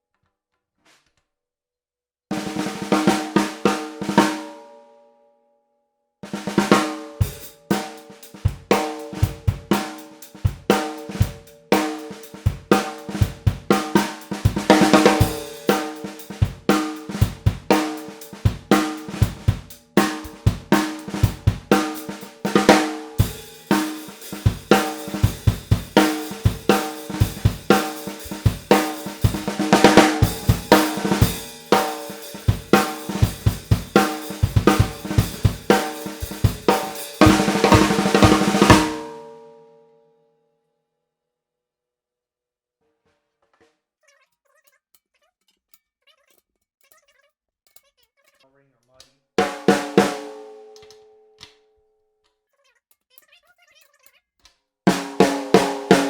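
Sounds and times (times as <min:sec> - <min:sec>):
snare drum struck with sticks: 0:06.3 - 0:39.4, 0:49.4 - 0:51.0, 0:54.9 - 0:56.0.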